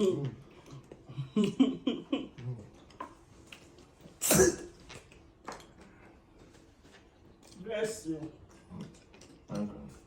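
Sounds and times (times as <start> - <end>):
man sneezing: 4.2 - 4.8.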